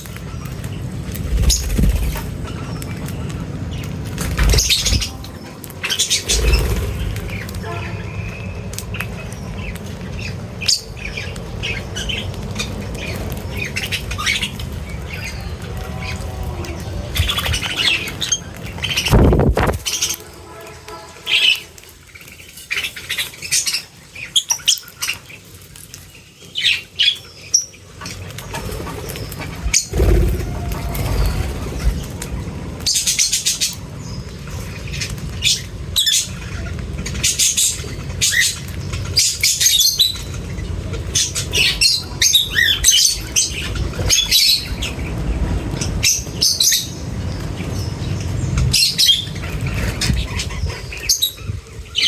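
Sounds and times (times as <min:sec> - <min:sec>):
birds chirping and squawking: 0:00.0 - 0:52.0
wing flaps: 0:01.1 - 0:02.4, 0:06.1 - 0:07.7, 0:19.0 - 0:20.1, 0:28.4 - 0:32.9.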